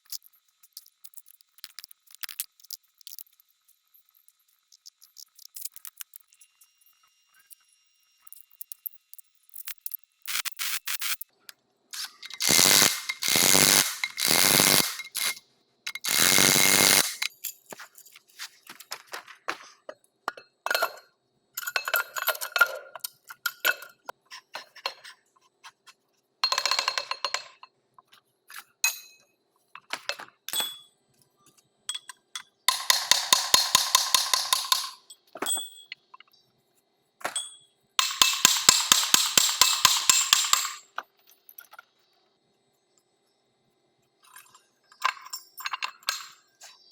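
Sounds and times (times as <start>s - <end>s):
metal clinks and scrapes: 0.0s - 11.2s, 12.0s - 36.3s, 44.2s - 46.9s
loud noisy tool bursts: 12.0s - 17.3s.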